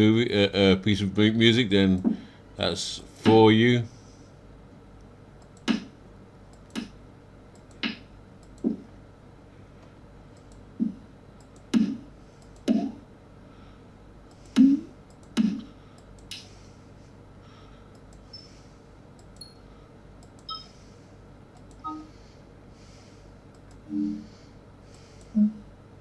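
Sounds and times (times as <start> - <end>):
electronic snare drum hits: 5.7 - 5.9.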